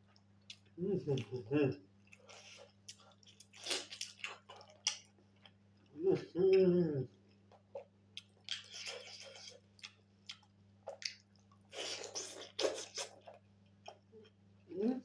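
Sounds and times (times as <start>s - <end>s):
wet chewing mouth sounds: 7.2s - 14.3s.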